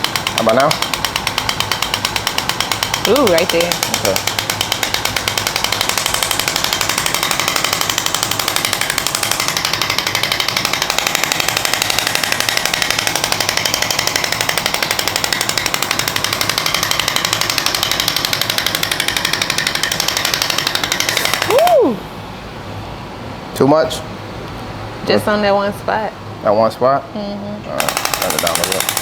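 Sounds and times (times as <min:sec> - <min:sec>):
rapid steady clicks: 0:00.0 - 0:21.8, 0:27.8 - 0:29.0.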